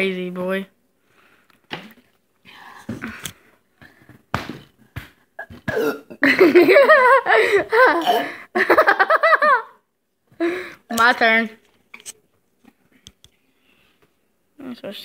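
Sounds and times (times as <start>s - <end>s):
rough throat sounds: 5.4s - 6.2s, 8.0s - 8.4s.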